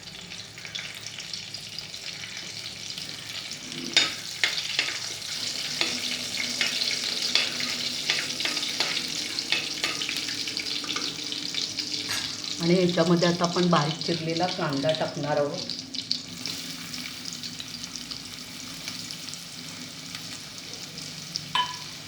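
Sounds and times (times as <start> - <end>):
seeds sizzling in hot oil: 0.0 - 22.0.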